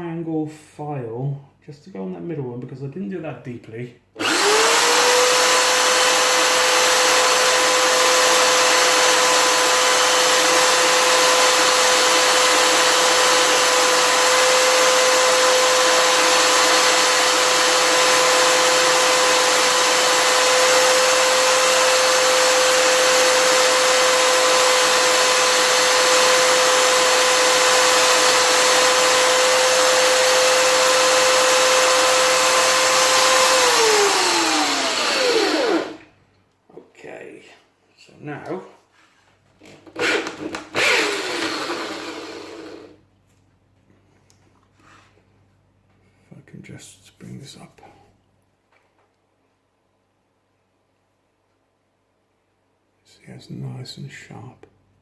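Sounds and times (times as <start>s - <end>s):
electric drill whining: 4.2s - 36.1s, 40.0s - 43.0s.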